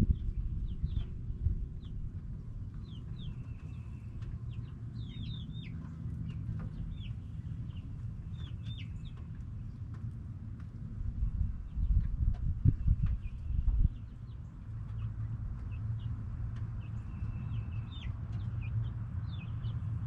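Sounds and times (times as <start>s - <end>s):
low rumble: 0.0s - 20.0s
chickens chirping: 2.6s - 9.8s.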